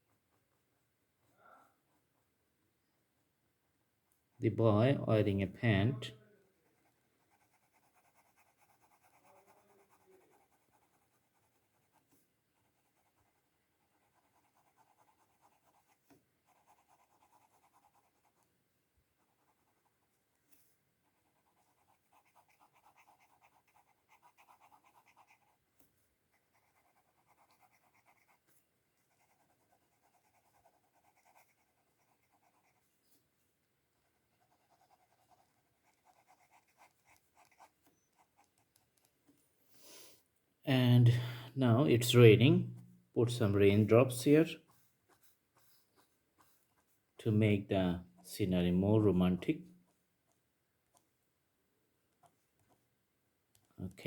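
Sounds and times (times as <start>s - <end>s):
pencil scratching on paper: 6.6s - 33.3s, 33.9s - 39.2s, 43.5s - 47.6s.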